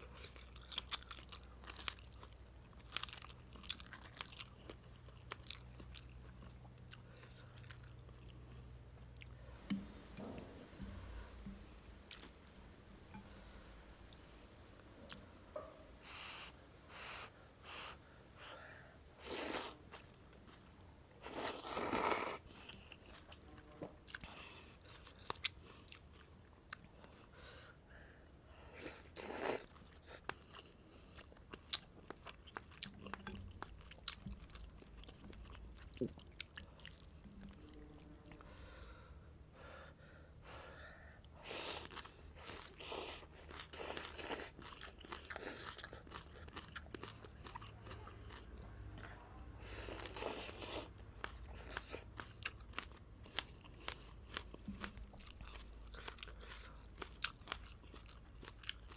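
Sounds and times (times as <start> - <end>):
wet chewing and biting: 41.3 - 58.9.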